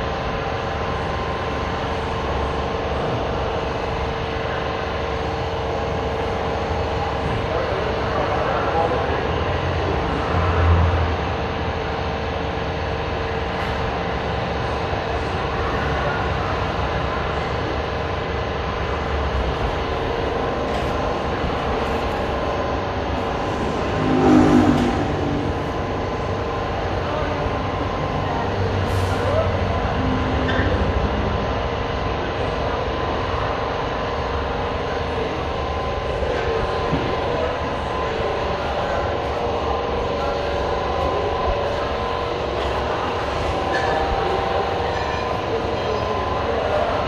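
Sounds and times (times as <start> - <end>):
mechanical drone and hum: 0.0 - 47.0
shop background din: 6.1 - 47.0
vehicle passing: 21.7 - 27.9.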